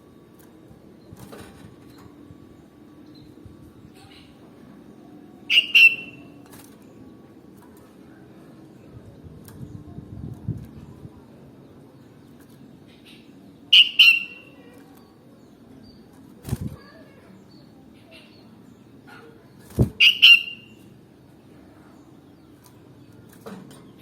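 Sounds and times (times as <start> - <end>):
bird sharp call notes: 5.5 - 6.3, 13.7 - 14.6, 19.9 - 20.8.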